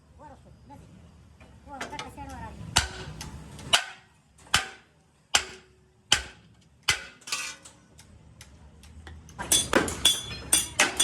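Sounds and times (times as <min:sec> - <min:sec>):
hammer striking metal: 0:02.8 - 0:07.6, 0:09.5 - 0:11.0.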